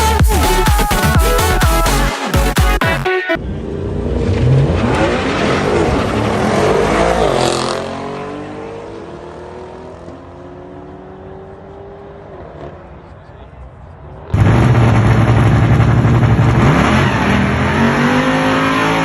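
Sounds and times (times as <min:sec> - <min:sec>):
dance music: 0:00.0 - 0:03.4
car engine revving: 0:03.4 - 0:13.1, 0:14.4 - 0:19.0.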